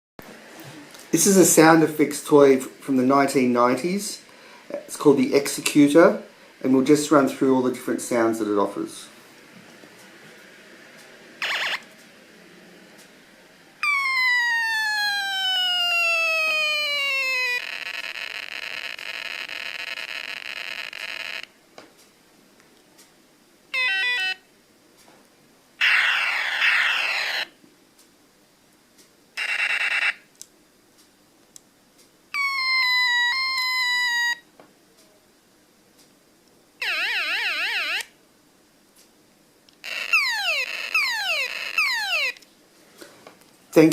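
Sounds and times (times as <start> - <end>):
quick falling chirps: 13.8 - 18.8, 32.4 - 34.4, 39.8 - 42.4
warbling siren-like tone: 13.8 - 21.2, 36.8 - 38.1, 39.8 - 42.4
steady electronic buzz: 14.8 - 21.5, 39.8 - 42.4
pulsing tone: 39.9 - 42.4.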